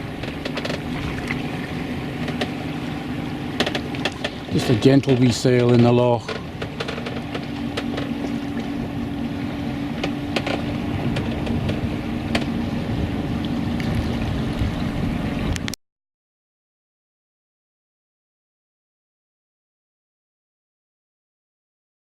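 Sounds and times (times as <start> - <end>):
steady low hum: 0.0 - 15.8
water noise: 0.0 - 15.8
small knocks: 0.2 - 1.0, 2.2 - 2.6, 3.6 - 8.4
wind noise: 3.8 - 15.8.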